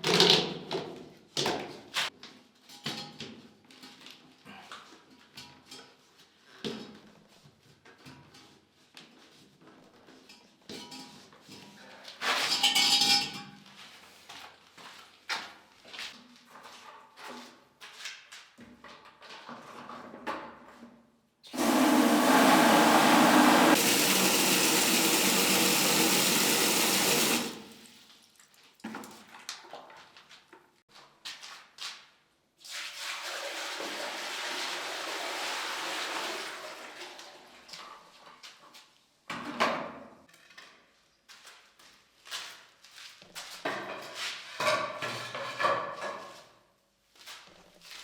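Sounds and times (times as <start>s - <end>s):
running water: 21.6s - 27.9s
water rushing from fixtures: 21.6s - 28.0s, 33.2s - 37.3s.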